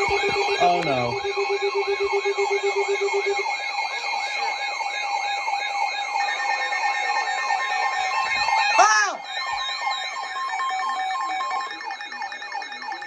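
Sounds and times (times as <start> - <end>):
steady alert tones: 0.0 - 3.6
rapid low beeping: 0.0 - 4.3
siren-like wailing alert tone: 0.0 - 11.7.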